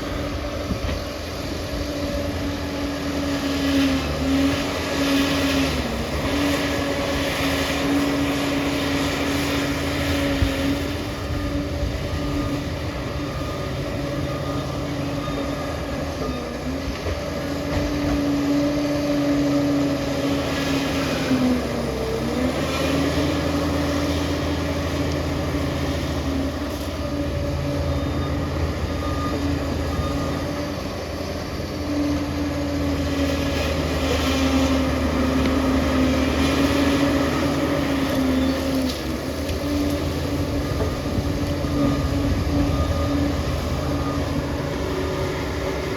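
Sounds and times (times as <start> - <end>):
bulldozer diesel engine whining: 0.0 - 45.9
track clatter: 33.0 - 45.9.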